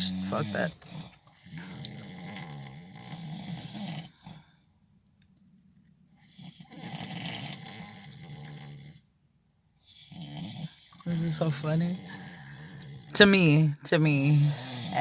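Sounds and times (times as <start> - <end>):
man snoring: 0.0 - 4.5, 6.3 - 9.1, 9.9 - 13.4, 14.3 - 15.0.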